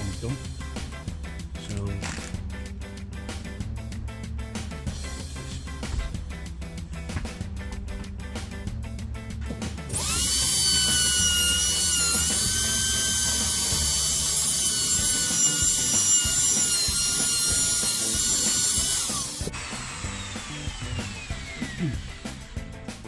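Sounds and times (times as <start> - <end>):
wood router whining: 9.9 - 22.7.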